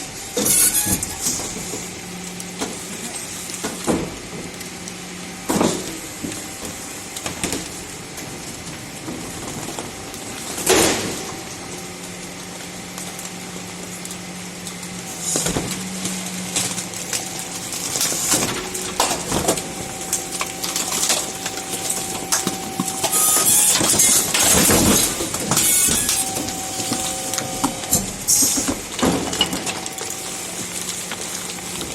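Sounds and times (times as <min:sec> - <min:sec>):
bins clattering and crunching: 0:00.4 - 0:31.9
truck engine humming: 0:11.2 - 0:31.9.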